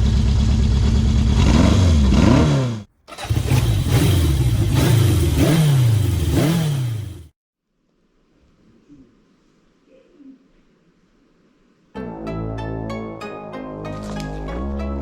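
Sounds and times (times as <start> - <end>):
motorcycle engine idling and revving: 0.0 - 7.4.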